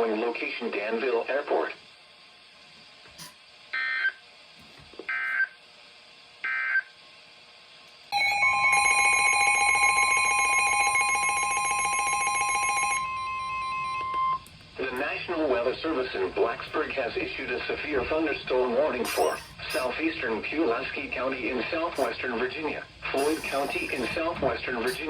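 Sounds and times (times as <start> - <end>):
electronic alert tone: 8.2 - 14.4
digital data squawks: 19.0 - 20.0, 23.1 - 24.2.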